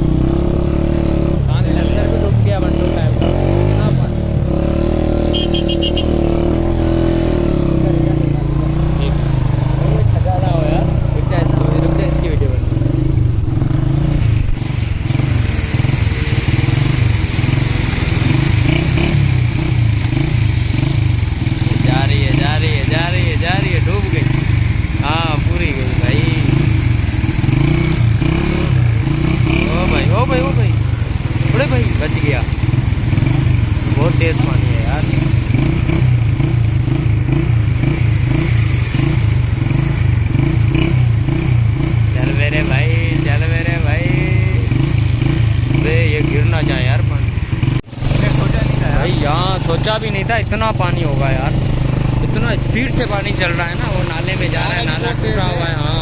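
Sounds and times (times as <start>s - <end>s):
motorcycle engine running: 0.0s - 56.0s
constant rushing noise: 7.3s - 56.0s
rushing floodwater: 14.3s - 19.5s.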